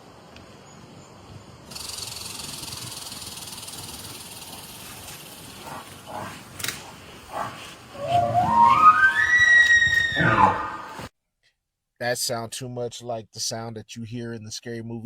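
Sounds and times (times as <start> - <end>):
large animal hissing: 1.7 - 9.0
animal grunting calls: 4.4 - 9.2.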